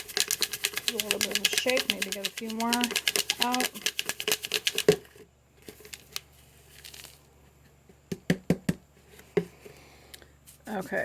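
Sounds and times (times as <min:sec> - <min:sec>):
dry seed heads rustling: 0:05.6 - 0:07.3.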